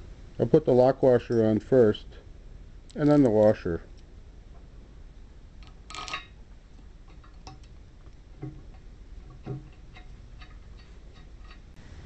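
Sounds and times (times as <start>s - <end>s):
metal washers clinking: 5.6s - 6.4s.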